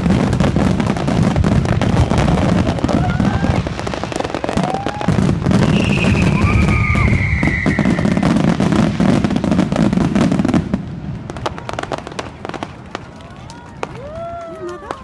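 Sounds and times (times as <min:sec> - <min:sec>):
high whistling firework: 0:00.0 - 0:13.0
fireworks crackling and popping: 0:00.0 - 0:15.0.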